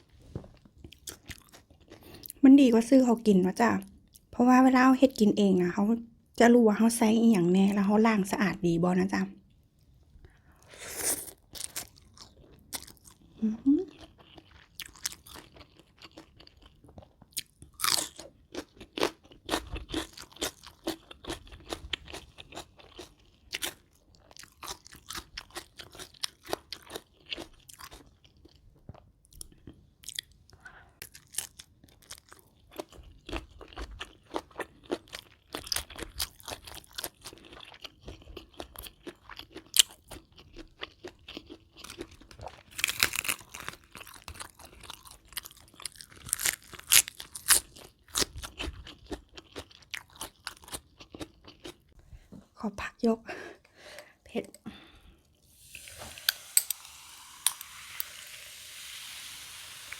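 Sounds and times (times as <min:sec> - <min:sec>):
chewing and crunching crisp food: 0:00.0 - 0:02.5, 0:09.0 - 0:52.0.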